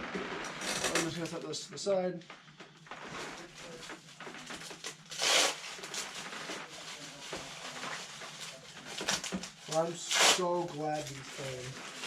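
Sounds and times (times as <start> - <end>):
wrapping material rustling: 3.0 - 12.0.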